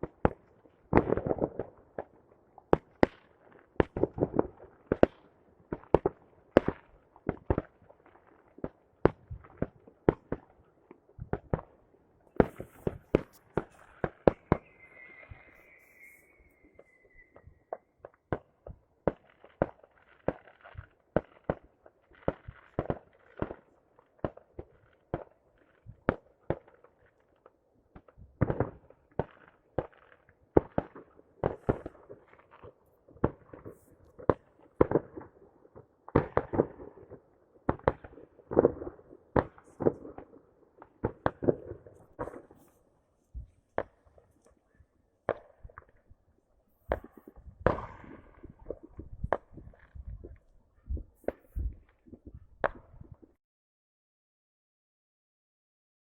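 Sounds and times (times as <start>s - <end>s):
fireworks bangs: 11.2s - 17.7s, 30.6s - 35.4s, 36.1s - 44.4s, 46.8s - 50.4s
fireworks crackle: 11.3s - 26.7s, 28.4s - 35.4s, 36.1s - 44.7s, 46.7s - 50.5s.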